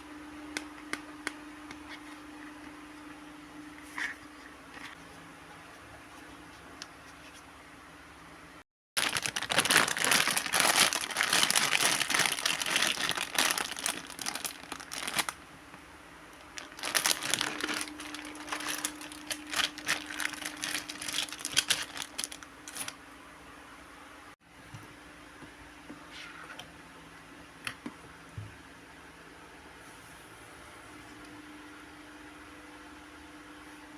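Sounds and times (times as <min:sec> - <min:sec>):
packaging crinkling and tearing: 0:09.0 - 0:15.4, 0:16.4 - 0:23.0.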